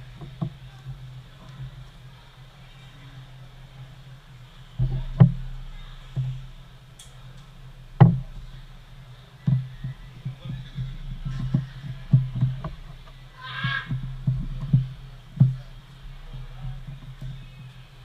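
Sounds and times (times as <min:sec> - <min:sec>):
steady low hum: 0:00.0 - 0:18.0
dull knocks and taps: 0:08.0 - 0:08.6, 0:09.4 - 0:17.8.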